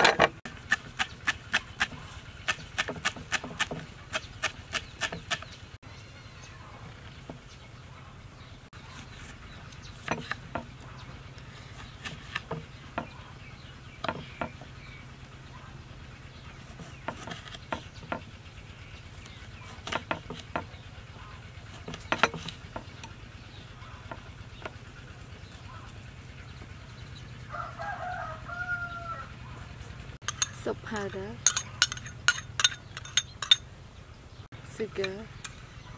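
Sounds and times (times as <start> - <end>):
steady low hum: 0.0 - 35.9
chickens clucking: 8.8 - 30.2
sharp knocks and clicks: 21.8 - 23.2.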